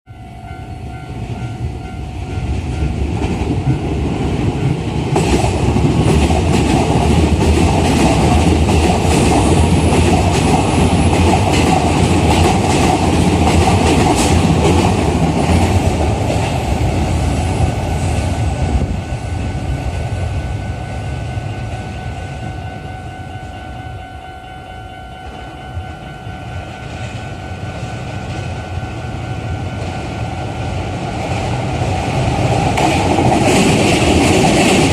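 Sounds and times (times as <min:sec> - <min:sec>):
level crossing warning bell: 0:00.1 - 0:05.0, 0:18.8 - 0:31.5
train wheels clattering over rail joints: 0:03.1 - 0:16.6, 0:32.4 - 0:34.9.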